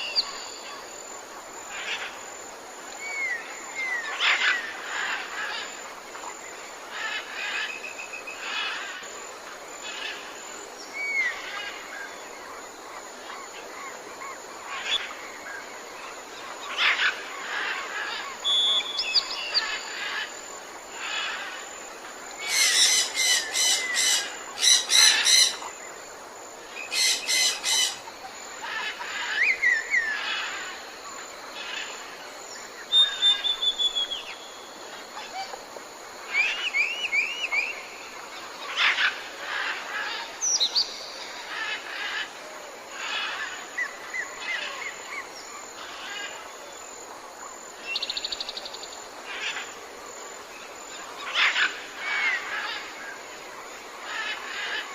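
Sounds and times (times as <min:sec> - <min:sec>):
birds chirping and singing: 0:22.5 - 0:25.7.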